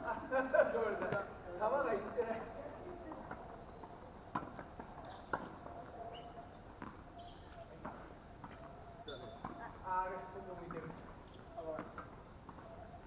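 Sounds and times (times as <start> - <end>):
tennis balls hit with rackets: 4.2 - 12.8.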